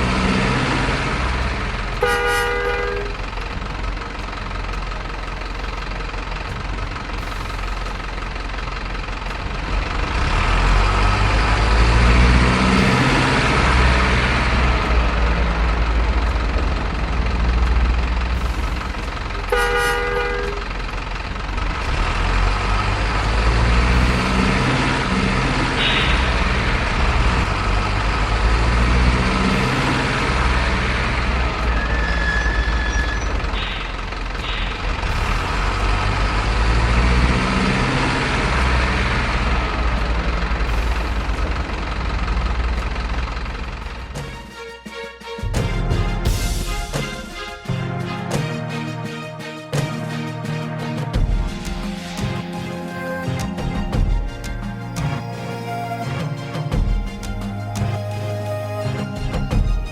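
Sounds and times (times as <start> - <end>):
truck horn blast: 0.0 - 3.2, 19.4 - 20.8, 21.8 - 39.6
diesel trucks passing: 0.0 - 59.9.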